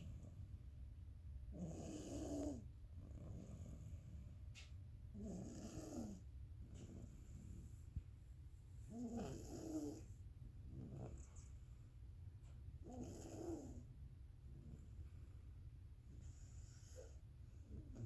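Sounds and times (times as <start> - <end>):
low steady hum: 0.0 - 18.0
baby snoring: 1.6 - 2.7.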